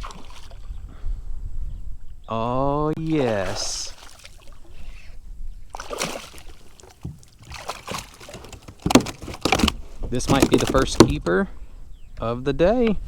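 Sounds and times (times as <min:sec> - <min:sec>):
water splashing and dripping: 0:03.0 - 0:04.8, 0:05.7 - 0:11.3
knocks and rustles on a kayak: 0:05.8 - 0:11.6.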